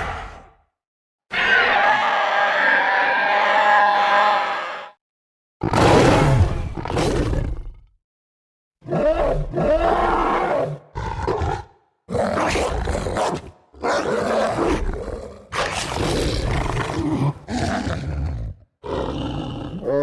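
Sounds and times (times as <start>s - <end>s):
creature snarling roars: 0.0s - 0.6s, 8.8s - 20.0s.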